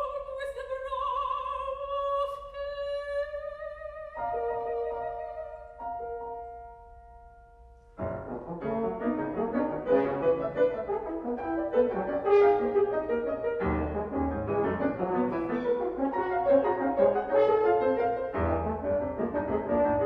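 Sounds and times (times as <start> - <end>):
soprano singing with vibrato: 0.0 - 6.2
piano: 0.0 - 20.0.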